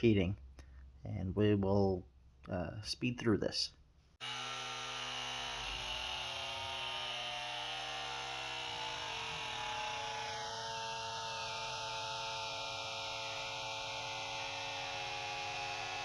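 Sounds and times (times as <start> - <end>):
air compressor buzzing: 4.2 - 16.0.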